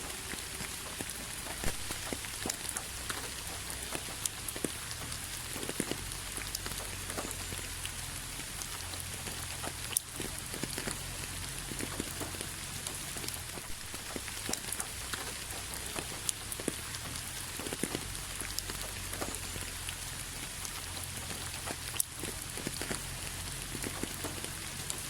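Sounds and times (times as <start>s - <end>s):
rain on a hard surface: 0.0s - 25.0s
raindrops tapping nearby: 0.0s - 25.0s.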